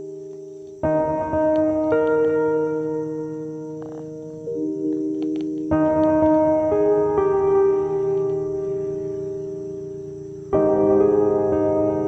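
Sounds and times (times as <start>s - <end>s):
slow ambient music chords: 0.0s - 12.0s.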